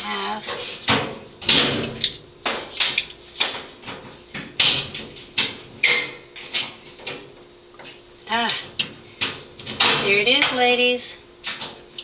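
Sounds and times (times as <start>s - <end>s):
tools knocking on washer parts: 0.5s - 10.8s.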